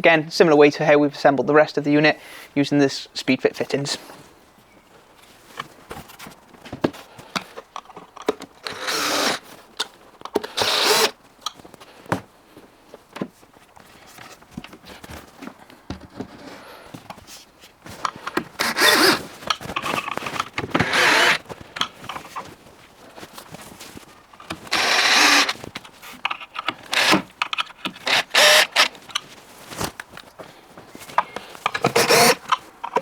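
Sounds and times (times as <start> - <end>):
power drill-driver running: 8.6 - 9.4, 10.5 - 11.2, 18.6 - 19.2, 20.7 - 21.4, 24.7 - 25.6, 26.7 - 28.9, 31.7 - 32.6.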